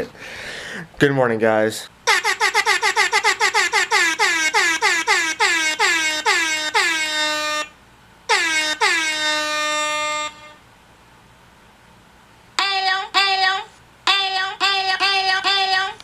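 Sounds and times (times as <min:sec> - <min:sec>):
air horn honks: 0:02.1 - 0:10.6.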